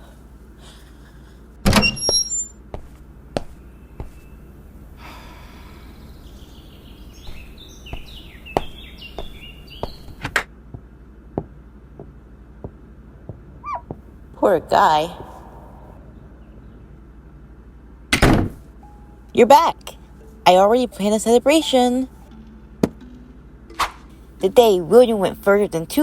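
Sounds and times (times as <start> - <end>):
door shutting with a thunk: 1.6 - 2.2, 18.2 - 18.6.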